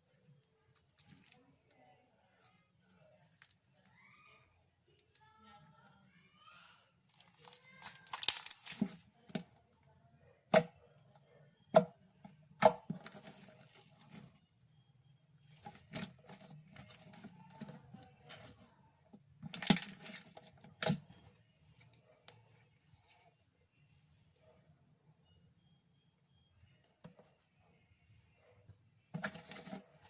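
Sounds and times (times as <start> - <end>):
slime squished by hand: 7.1 - 9.0.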